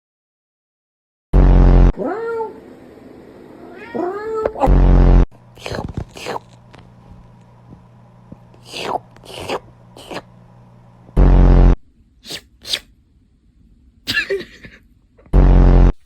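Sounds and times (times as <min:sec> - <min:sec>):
person making cat-like noises: 0:03.8 - 0:05.0, 0:05.6 - 0:06.6, 0:08.6 - 0:10.3, 0:12.2 - 0:12.9.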